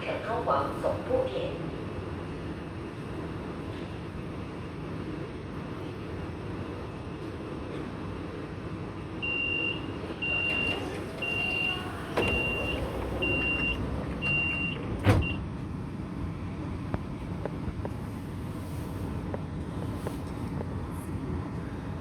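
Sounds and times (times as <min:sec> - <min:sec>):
stopped train humming: 0:00.0 - 0:22.0
train doors shutting thud: 0:09.8 - 0:15.5.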